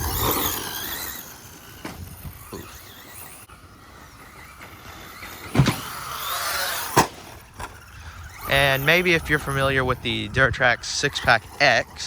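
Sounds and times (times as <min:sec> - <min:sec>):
electric motor whine: 0:00.0 - 0:12.0
loud thump: 0:05.5 - 0:05.9.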